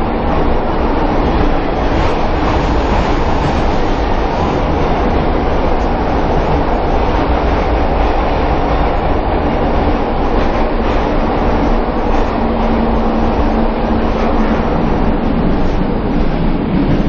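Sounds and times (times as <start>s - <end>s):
train wheels rumbling: 0.0s - 17.0s.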